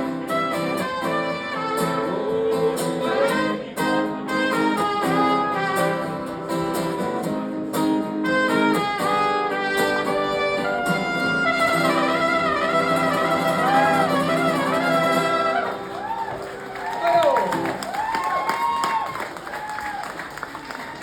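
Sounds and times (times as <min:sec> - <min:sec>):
strummed guitar chords: 0:00.0 - 0:16.1.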